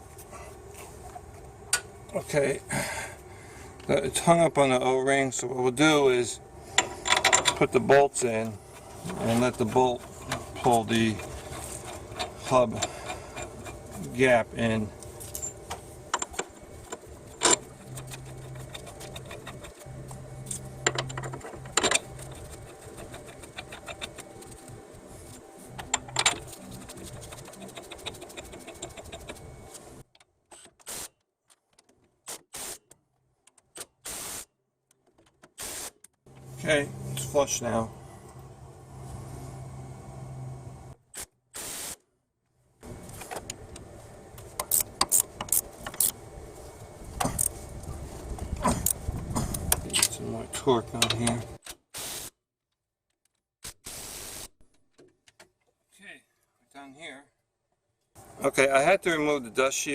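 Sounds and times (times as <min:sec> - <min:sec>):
low hum: 0:00.0 - 0:30.0, 0:36.3 - 0:41.0, 0:42.8 - 0:51.6
ratchet wrench clicking: 0:44.6 - 0:46.2.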